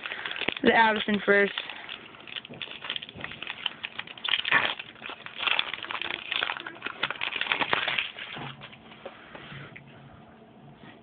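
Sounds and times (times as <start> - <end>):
foil wrapper crinkling and tearing: 0.0 - 8.7.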